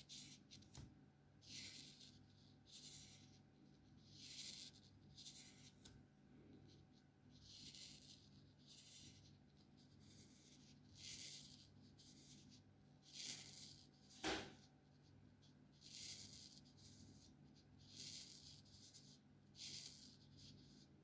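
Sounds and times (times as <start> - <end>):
marker tip rubbing on paper: 0.0 - 0.8, 1.4 - 5.9, 6.7 - 15.0, 15.7 - 20.9.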